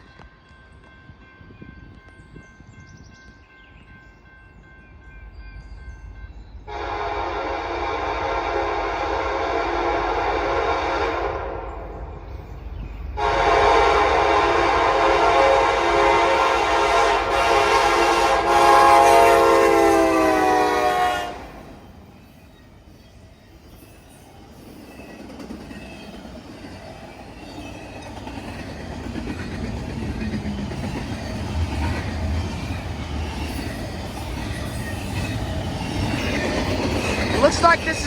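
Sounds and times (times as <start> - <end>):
train rumble: 0.0 - 38.0
train horn blowing: 6.7 - 11.9, 13.2 - 21.8.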